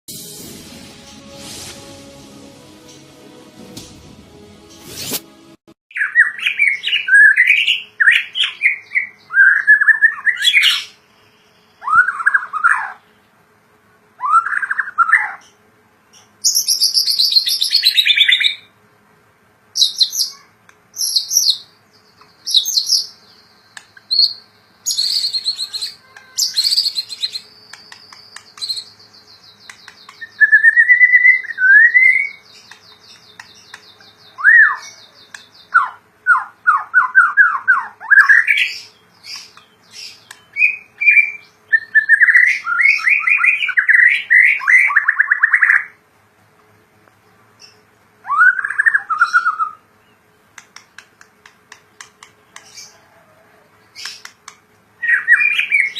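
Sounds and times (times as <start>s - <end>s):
songbird whistling phrases: 5.9s - 10.9s, 11.8s - 13.0s, 14.2s - 15.4s, 24.1s - 28.9s, 29.5s - 32.4s, 34.2s - 39.6s, 40.3s - 45.9s, 48.2s - 49.8s, 55.0s - 55.9s.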